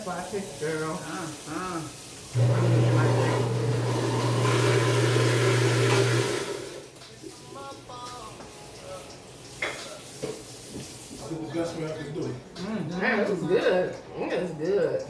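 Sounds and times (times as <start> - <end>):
electric appliance humming: 2.3 - 6.9.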